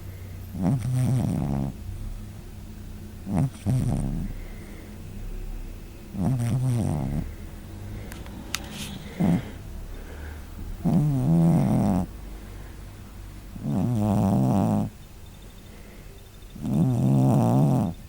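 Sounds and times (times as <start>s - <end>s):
cat snoring: 0.0s - 1.8s, 3.2s - 5.0s, 6.1s - 7.4s, 8.9s - 10.2s, 10.8s - 12.2s, 13.5s - 15.0s, 16.5s - 18.0s
cat breathing quietly: 3.5s - 5.6s, 6.8s - 13.4s, 15.3s - 16.5s.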